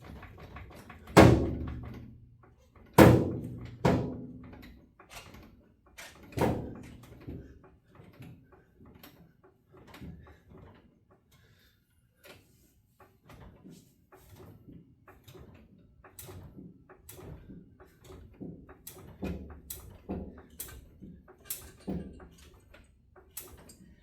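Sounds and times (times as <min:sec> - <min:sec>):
heavy metal clanks and thuds: 0:00.6 - 0:02.2, 0:02.9 - 0:04.7, 0:06.3 - 0:07.5.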